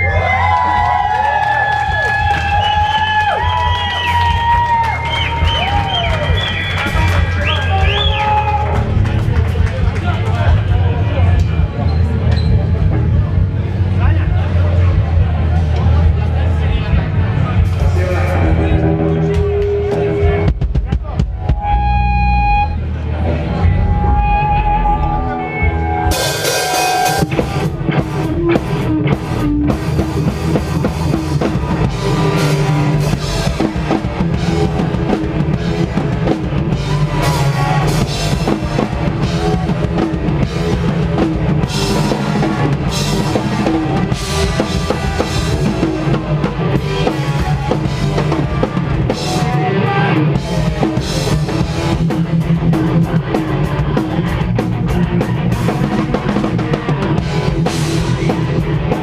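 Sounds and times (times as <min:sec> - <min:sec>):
driving bass drum: 0:00.0 - 0:23.0, 0:23.6 - 0:59.0
rock band playing live: 0:00.0 - 0:59.0.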